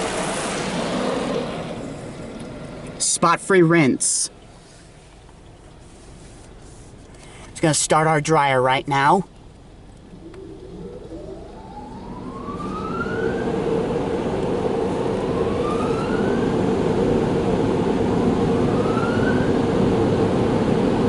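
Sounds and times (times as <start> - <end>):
car wash blowers rushing air: 0.0 - 21.0
rising whines: 9.4 - 21.0.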